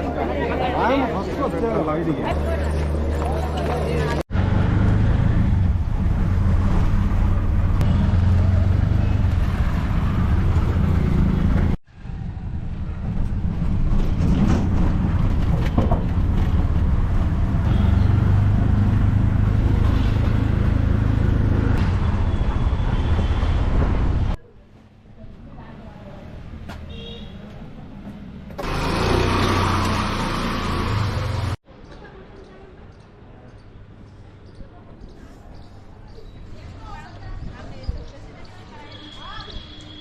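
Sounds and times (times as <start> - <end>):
vehicle engine hum: 2.3 - 22.8, 27.6 - 31.6.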